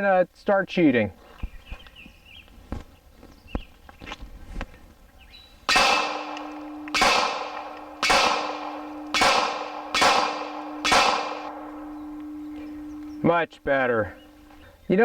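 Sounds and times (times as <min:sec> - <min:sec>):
pistol shots: 0:05.7 - 0:13.1
steel target ringing: 0:05.7 - 0:14.6.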